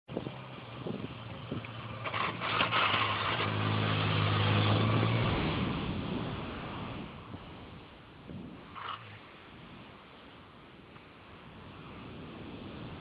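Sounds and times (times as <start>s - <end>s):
motorcycle engine passing: 0.8s - 7.1s.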